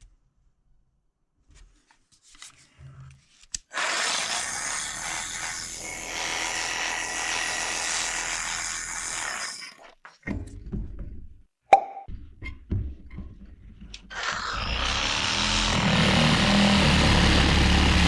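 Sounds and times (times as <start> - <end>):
cordless jigsaw cutting: 3.7 - 9.9, 14.1 - 18.0.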